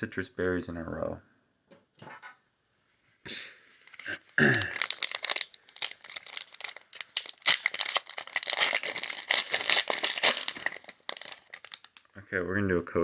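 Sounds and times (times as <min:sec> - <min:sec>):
foil wrapper tearing and crinkling: 0:04.0 - 0:12.1.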